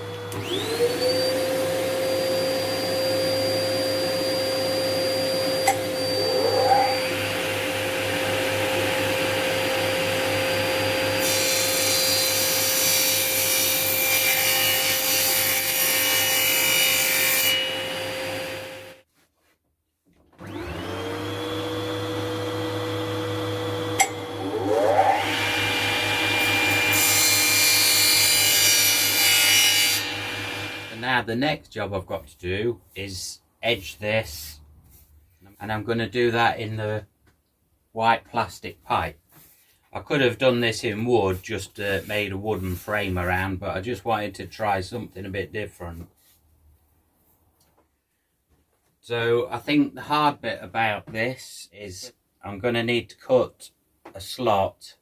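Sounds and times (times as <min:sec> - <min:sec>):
electric saw cutting board: 0:00.0 - 0:19.0, 0:20.4 - 0:31.1.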